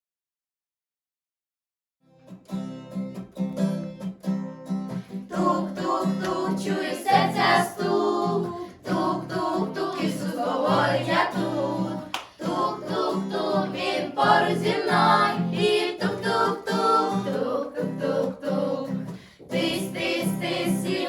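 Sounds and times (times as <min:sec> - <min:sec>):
plucked or strummed notes: 0:02.1 - 0:21.0
person singing: 0:05.3 - 0:21.0.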